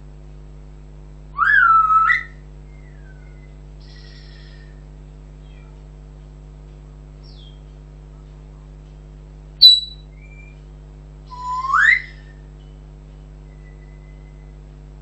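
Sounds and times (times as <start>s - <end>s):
steady low hum: 0.0s - 15.0s
parrot whistling: 1.4s - 4.7s, 9.6s - 10.6s, 11.3s - 12.4s
faint bird chirps: 1.4s - 4.8s, 7.2s - 7.7s, 9.6s - 10.6s, 11.3s - 12.8s, 13.4s - 14.6s.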